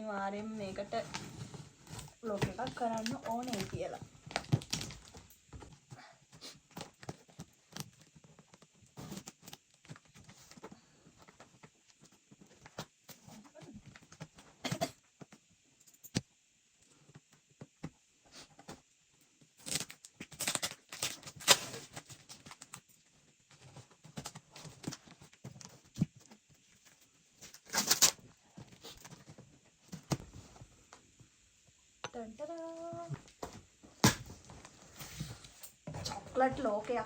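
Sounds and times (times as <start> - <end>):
tape and cardboard tearing: 19.6 - 22.7, 27.5 - 28.3, 34.0 - 34.4.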